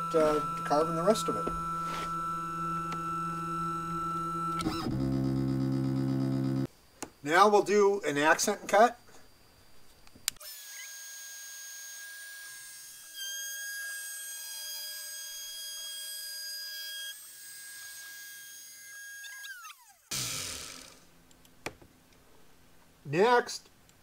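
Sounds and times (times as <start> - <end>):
router spindle whining: 0.0 - 6.7, 17.9 - 21.1.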